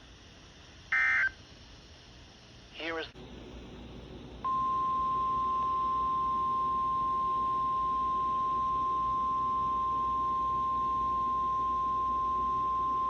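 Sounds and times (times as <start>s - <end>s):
high alarm beep: 4.5s - 13.0s.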